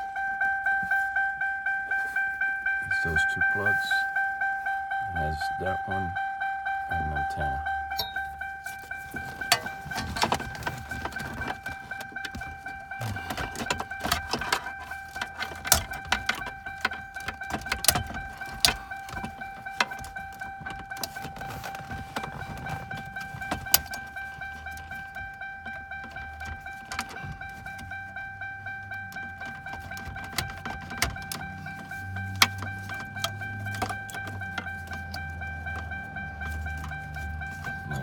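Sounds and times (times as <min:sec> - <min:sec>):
steady high-pitched tone: 0:00.0 - 0:38.0
clicks and rattles of wiring plugs: 0:08.0 - 0:38.0.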